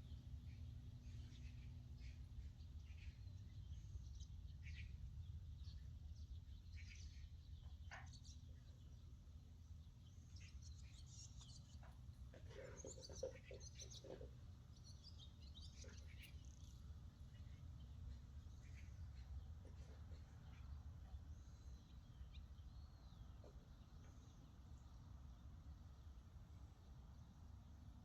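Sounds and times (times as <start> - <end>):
low steady hum: 0.0 - 28.0
bird chirps: 10.2 - 24.2.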